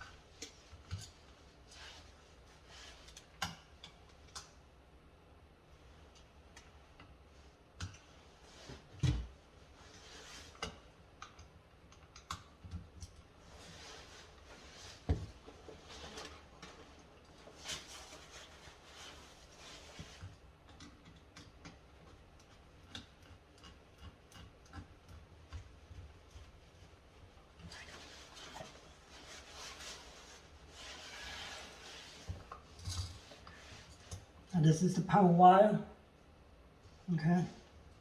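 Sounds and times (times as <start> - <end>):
scratchy rustling: 27.6 - 34.0.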